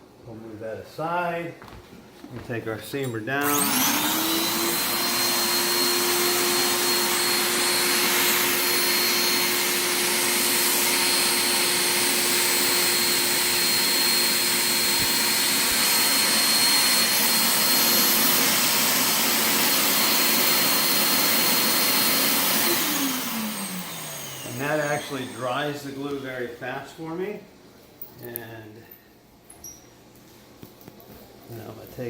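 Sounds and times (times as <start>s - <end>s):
electric blower motor whining: 3.4s - 26.2s.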